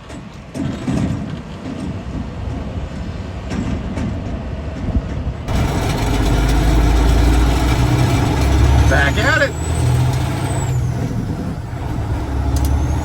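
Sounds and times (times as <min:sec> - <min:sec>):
gusty wind buffeting microphone: 0:00.2 - 0:09.0
low rumble: 0:05.5 - 0:13.0
truck engine droning: 0:05.5 - 0:13.0.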